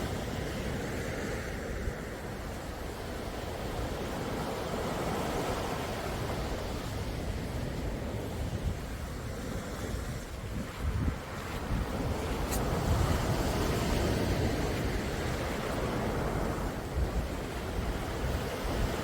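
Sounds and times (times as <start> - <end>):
sea waves washing in: 0.0 - 19.0
wind buffeting microphone: 0.0 - 19.0.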